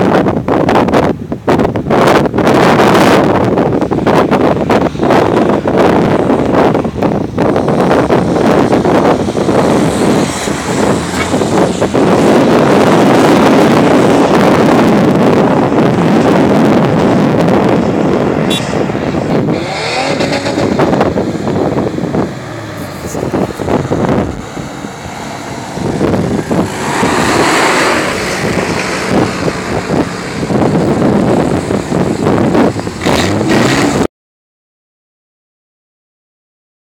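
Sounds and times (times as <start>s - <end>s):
engine revving hard under load: 7.4s - 34.1s.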